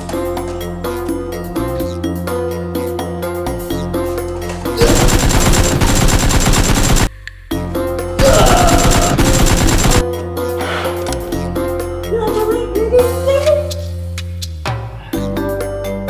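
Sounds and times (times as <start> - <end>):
music with steady beat: 0.0 - 16.0
automatic gunfire: 4.8 - 7.1, 8.2 - 10.1.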